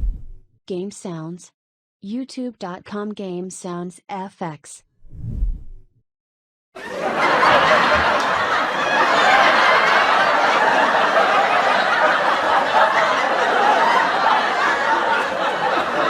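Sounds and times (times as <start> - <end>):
studio audience laughing: 6.8 - 16.0.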